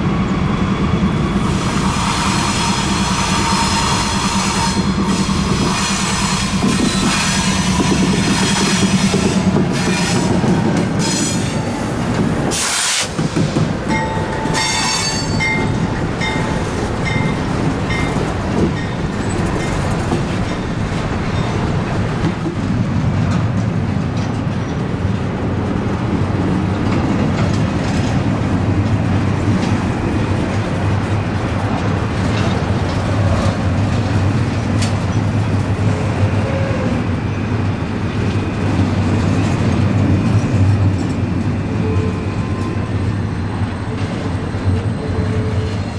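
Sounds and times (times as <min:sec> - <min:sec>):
train wheels rumbling on rails: 0:00.0 - 0:45.9
high squeal: 0:01.3 - 0:10.2, 0:14.1 - 0:15.9.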